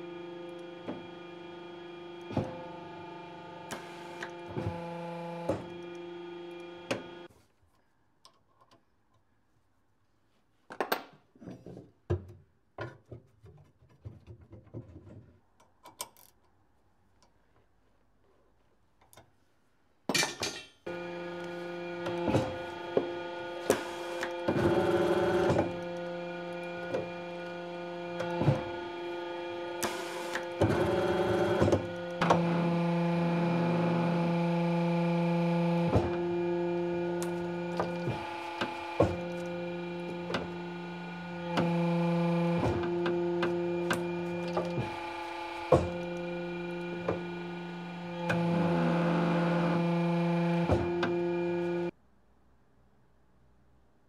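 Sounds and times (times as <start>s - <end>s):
paper shredder motor humming: 0.0s - 7.3s, 20.9s - 51.9s
cardboard crunching in shredder: 20.9s - 51.9s.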